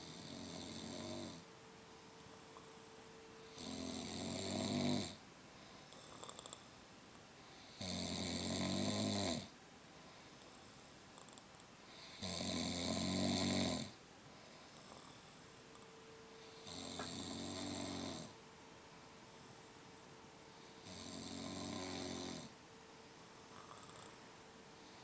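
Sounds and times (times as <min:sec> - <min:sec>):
person snoring loudly: 0:00.0 - 0:01.4, 0:03.5 - 0:05.2, 0:07.6 - 0:09.5, 0:12.0 - 0:14.0, 0:16.6 - 0:18.4, 0:20.8 - 0:22.5, 0:23.4 - 0:24.1
quiet breathing: 0:00.0 - 0:25.0.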